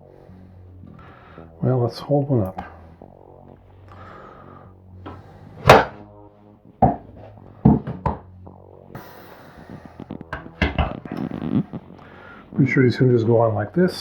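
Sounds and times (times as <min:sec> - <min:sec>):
knocks of wooden cabinet parts: 0:05.6 - 0:06.0, 0:07.6 - 0:08.3, 0:10.4 - 0:11.0.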